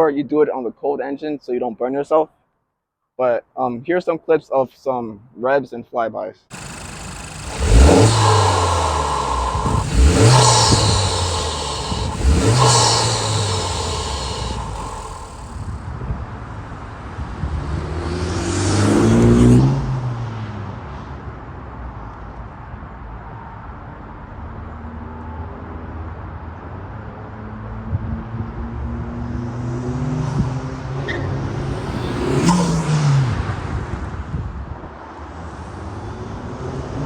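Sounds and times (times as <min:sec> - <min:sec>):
car engine revving: 0:06.5 - 0:15.8, 0:18.3 - 0:20.0, 0:30.7 - 0:33.2.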